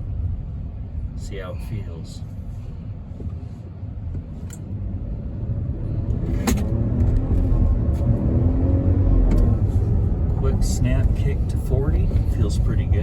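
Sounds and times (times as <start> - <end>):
car engine accelerating: 4.6 - 13.0.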